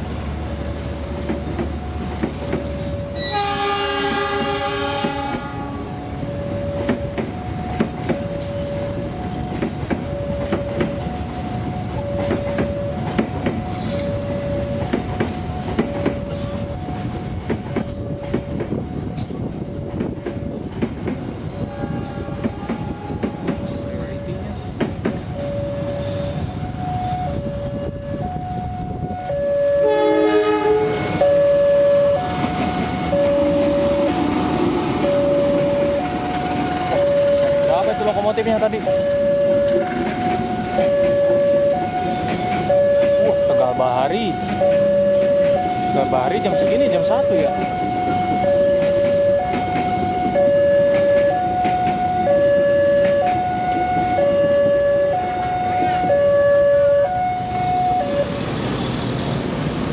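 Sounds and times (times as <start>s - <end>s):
passing train rumble: 0.0s - 59.9s
level-crossing alarm two tones: 0.5s - 20.6s, 21.6s - 59.0s
locomotive horn chord: 3.1s - 6.0s, 21.6s - 23.5s, 29.4s - 32.4s, 33.2s - 37.6s.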